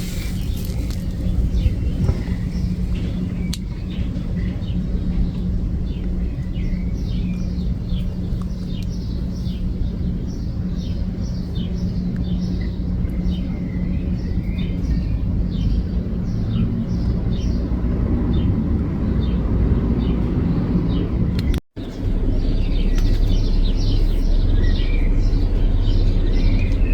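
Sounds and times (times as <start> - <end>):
constant hum: 0.0 - 26.9
low rumble: 0.0 - 26.9
small birds chirping: 0.0 - 26.9.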